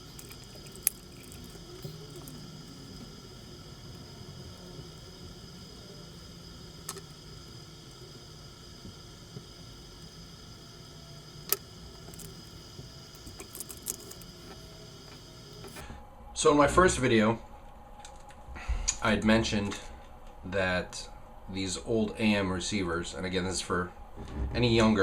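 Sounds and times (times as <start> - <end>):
faint electrical hum: 0.0 - 25.0.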